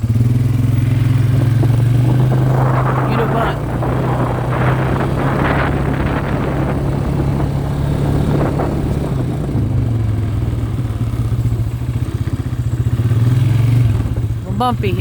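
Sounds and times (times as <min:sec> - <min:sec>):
farm vehicle engine running: 0:00.0 - 0:15.0
vehicle rattling over bumps: 0:00.0 - 0:15.0.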